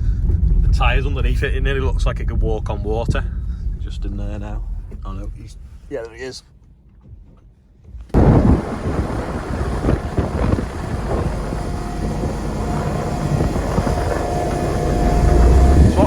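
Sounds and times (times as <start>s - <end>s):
wind buffeting microphone: 0.0s - 5.8s, 8.0s - 16.0s
faint steady whine: 8.2s - 16.0s.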